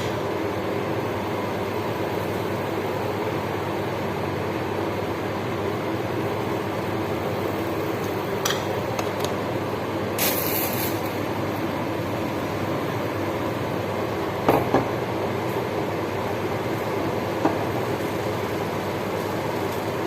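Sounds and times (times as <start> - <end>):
stove-top cooking noise: 0.0 - 20.0
short hiss: 10.2 - 11.1.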